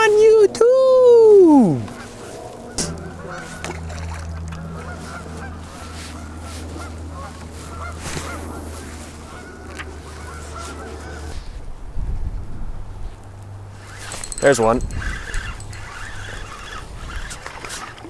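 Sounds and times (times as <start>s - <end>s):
low hum: 0.3s - 17.5s
geese honking: 1.9s - 11.4s.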